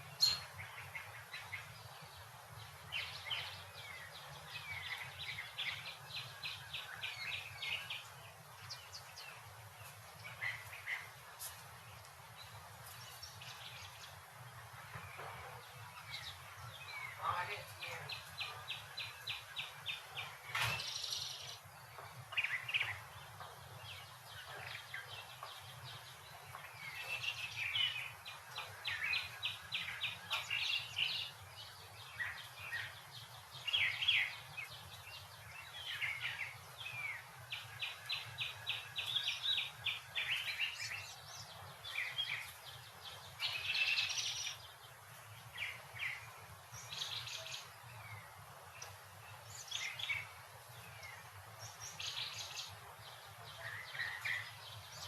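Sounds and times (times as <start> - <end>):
songbirds singing and chirping: 0.0 - 55.0.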